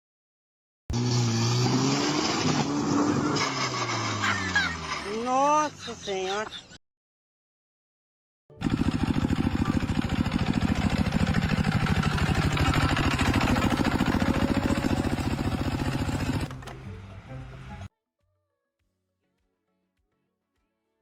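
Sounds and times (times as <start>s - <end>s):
engine-driven machine pulsing: 8.6s - 16.8s.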